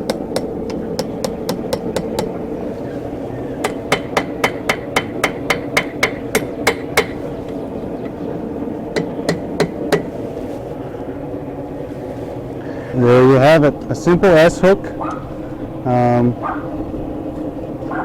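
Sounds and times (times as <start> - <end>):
hammer striking steel on anvil: 3.6 - 7.3, 9.0 - 10.1.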